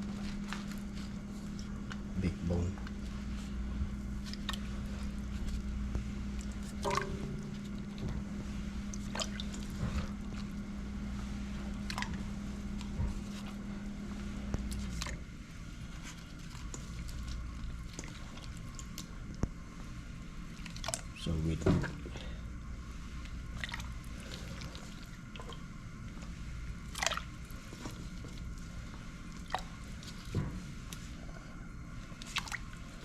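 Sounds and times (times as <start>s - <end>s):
steady low hum: 0.0s - 33.0s
liquid splashing: 6.3s - 10.7s, 11.6s - 13.6s, 20.5s - 21.1s, 23.5s - 25.6s, 26.8s - 28.4s, 32.2s - 33.0s.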